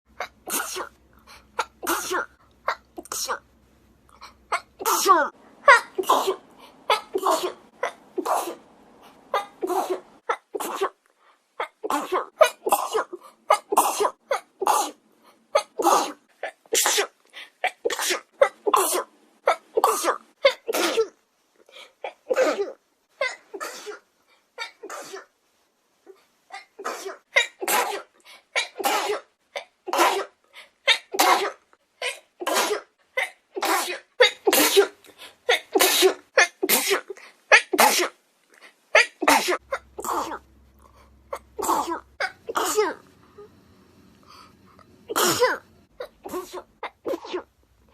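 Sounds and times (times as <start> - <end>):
woman sneezing: 4.6 - 8.6, 22.1 - 25.3, 26.6 - 38.2, 38.9 - 40.4, 45.1 - 47.5.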